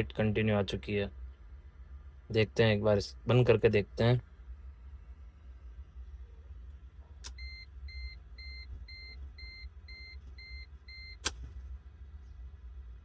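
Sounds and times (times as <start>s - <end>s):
steady low hum: 0.0s - 13.0s
sharp click: 11.2s - 11.4s.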